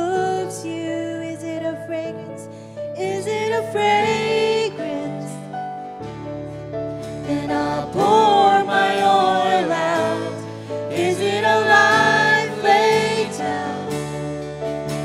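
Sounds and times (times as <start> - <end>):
sustained instrumental accompaniment: 4.0 - 15.0
voices singing a melody: 7.3 - 14.0.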